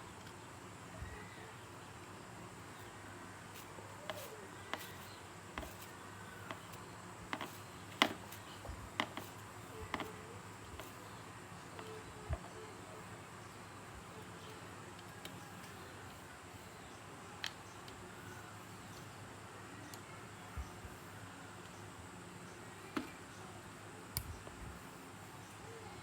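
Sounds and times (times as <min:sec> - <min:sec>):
light clicks and knocks: 0:04.0 - 0:11.0.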